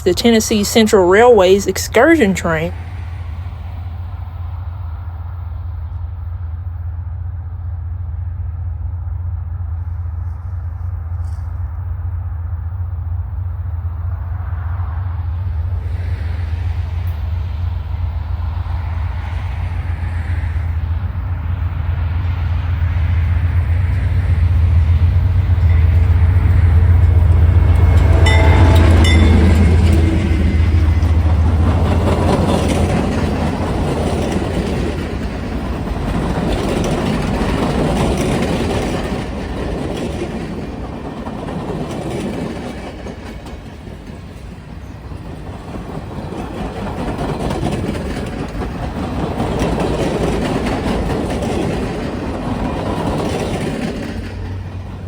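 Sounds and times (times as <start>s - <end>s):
brief high tone: 0.0s - 2.8s
locomotive engine rumble: 0.0s - 55.0s
train wheels clickety-clack: 15.7s - 55.0s.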